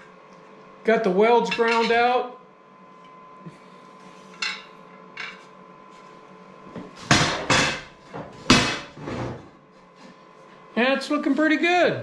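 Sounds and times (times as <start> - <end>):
loud knocks and clunks: 7.0 - 9.0.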